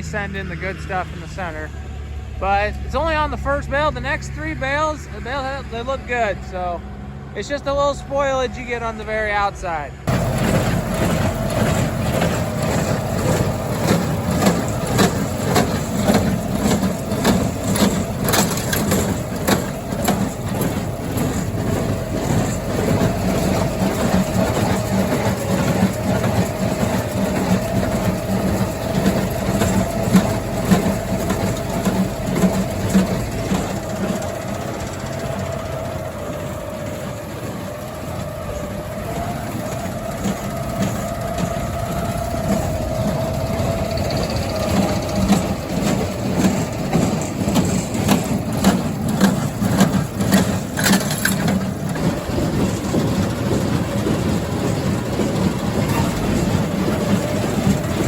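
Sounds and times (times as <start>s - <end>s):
tractor engine running: 0.0s - 58.0s
machinery clanking and knocking: 7.4s - 58.0s.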